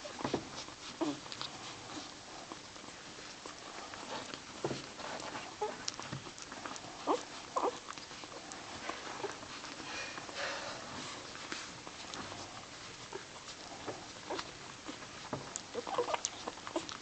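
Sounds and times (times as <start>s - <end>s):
puppies squeaking and whimpering: 0.0s - 17.0s
soft shuffling and patter: 0.0s - 17.0s.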